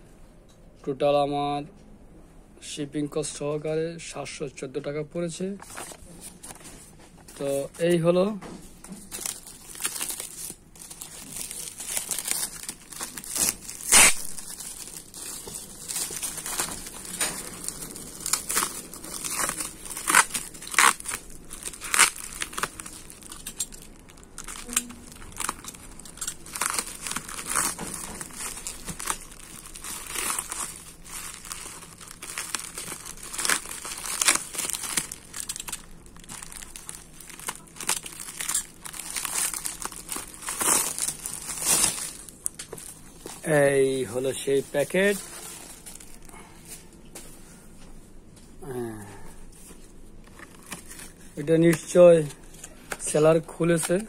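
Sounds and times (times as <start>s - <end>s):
packaging crinkling and rustling: 5.6s - 47.0s, 49.6s - 54.0s
sharp packaging crackle: 8.8s - 46.4s, 50.2s - 54.0s.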